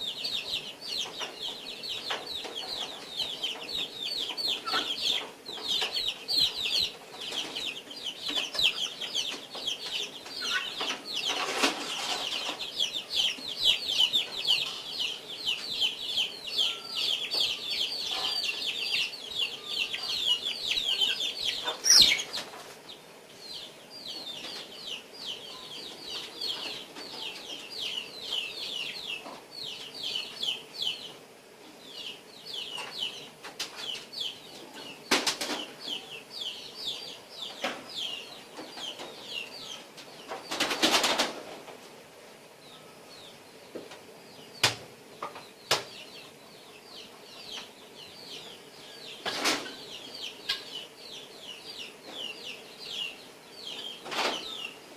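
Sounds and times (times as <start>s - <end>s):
guinea fowl calling: 16.6s - 22.4s.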